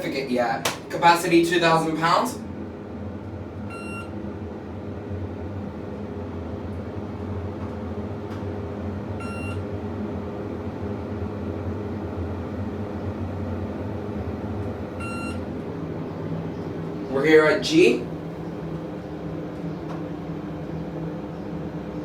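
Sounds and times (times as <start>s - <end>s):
elevator cab hum: 0.0s - 18.9s
elevator chime beep: 3.7s - 4.1s, 9.2s - 9.6s, 15.0s - 15.5s.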